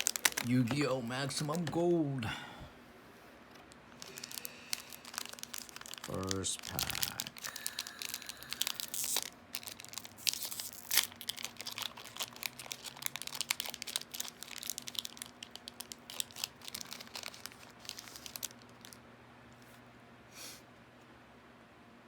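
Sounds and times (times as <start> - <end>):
wrapper ripping: 0.0 - 1.7, 4.0 - 19.0
wrapper crinkling: 0.0 - 2.0, 3.7 - 19.0.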